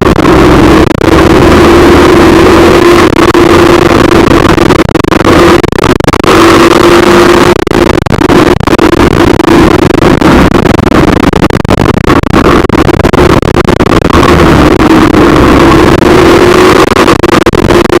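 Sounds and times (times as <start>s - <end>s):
road noise: 0.0s - 7.6s, 14.0s - 17.2s
vehicle engine hum: 0.0s - 18.0s.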